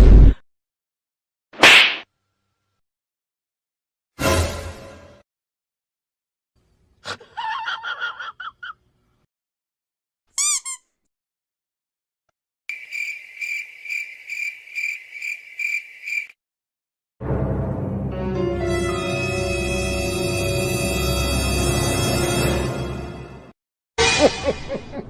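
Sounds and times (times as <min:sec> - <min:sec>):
cricket chirping effect: 0:12.7 - 0:16.4.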